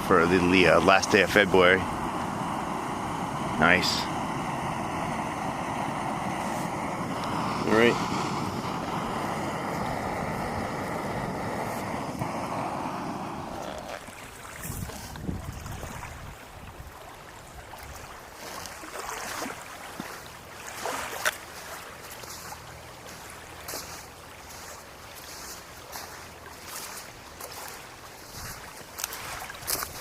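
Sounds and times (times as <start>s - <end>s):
strong gusty wind: 0.0s - 17.0s
water lapping: 0.0s - 30.0s.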